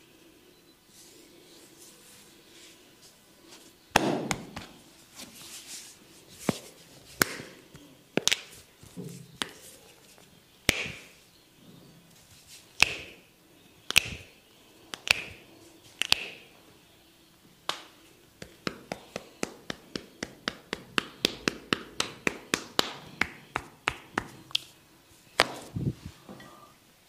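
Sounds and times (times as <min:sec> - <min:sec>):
percussive massage strikes: 0:03.9 - 0:04.8, 0:10.7 - 0:11.1, 0:12.8 - 0:13.2, 0:17.7 - 0:24.4.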